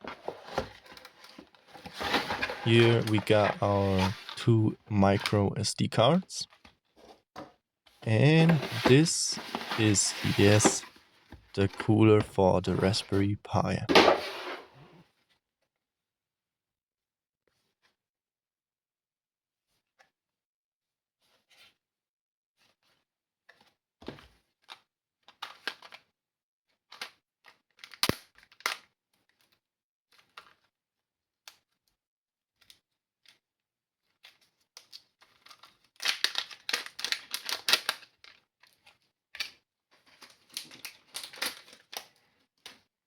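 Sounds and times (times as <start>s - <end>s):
packaging crinkling: 35.3s - 38.4s.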